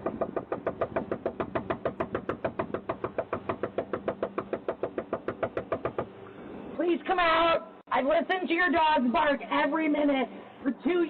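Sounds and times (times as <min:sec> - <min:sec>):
rapid pounding on a door: 0:00.0 - 0:06.2.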